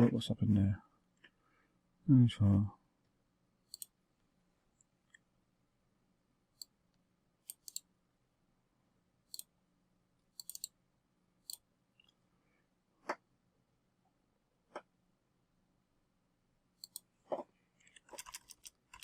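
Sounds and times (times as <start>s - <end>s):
mouse and keyboard clicks: 3.7s - 4.0s, 7.5s - 7.9s, 10.4s - 10.8s, 11.4s - 12.2s, 16.8s - 19.0s.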